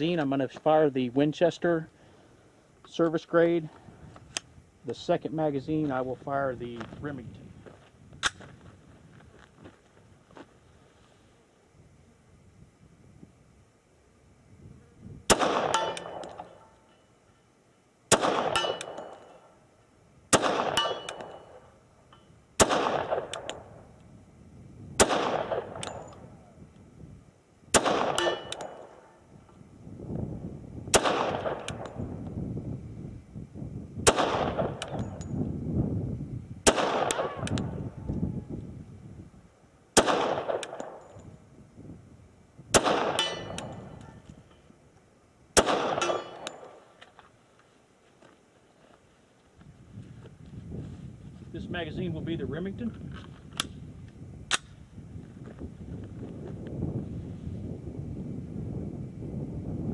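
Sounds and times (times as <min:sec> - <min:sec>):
pistol shots with ringing echo: 0:15.3 - 0:16.7, 0:18.1 - 0:19.6, 0:20.3 - 0:21.7, 0:22.6 - 0:23.8, 0:25.0 - 0:26.3, 0:27.7 - 0:29.2, 0:30.9 - 0:32.0, 0:34.0 - 0:35.2, 0:36.6 - 0:37.8, 0:40.0 - 0:41.2, 0:42.7 - 0:44.2, 0:45.6 - 0:46.9.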